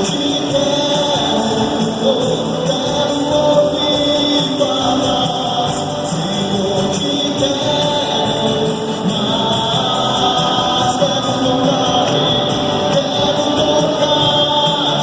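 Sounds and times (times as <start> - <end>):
live band with vocals: 0.0 - 15.0.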